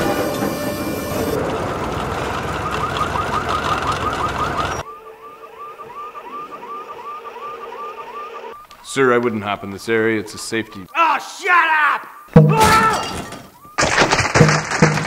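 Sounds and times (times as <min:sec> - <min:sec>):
loud rumbling noise: 0:00.0 - 0:04.8
car alarm whooping: 0:00.0 - 0:13.9.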